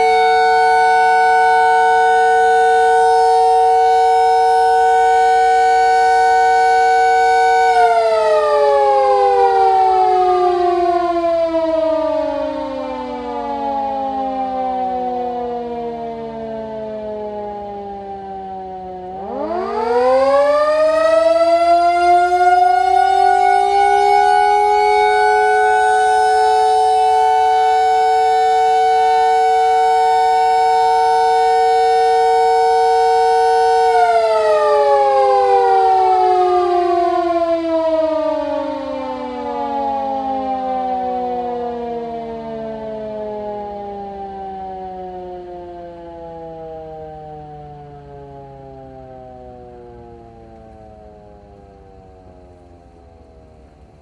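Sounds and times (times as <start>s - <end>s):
electric motor sirens winding: 19.0s - 36.9s.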